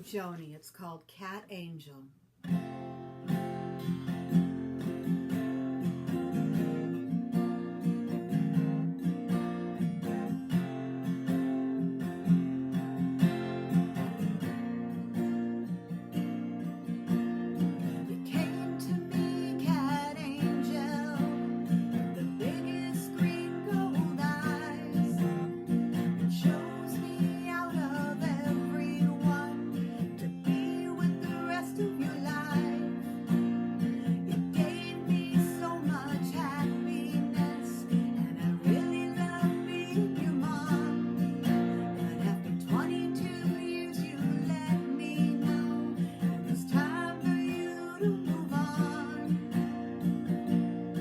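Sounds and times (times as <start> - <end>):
acoustic guitar strumming chords: 2.5 - 51.0.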